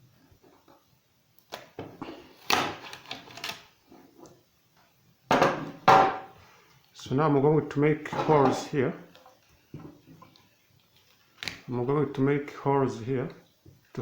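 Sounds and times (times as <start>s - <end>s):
hard objects knocking and clattering: 5.3s - 6.3s.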